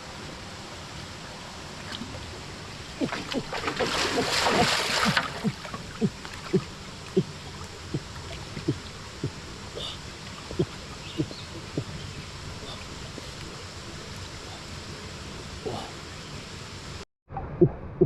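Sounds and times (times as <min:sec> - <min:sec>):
background hiss: 0:00.0 - 0:17.0.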